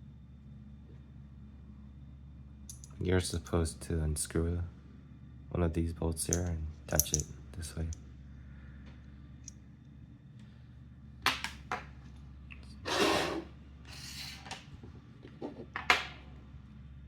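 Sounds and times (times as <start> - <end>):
small metal parts clicking: 2.7 - 3.0, 6.2 - 8.0
metal parts scraping: 6.2 - 7.2.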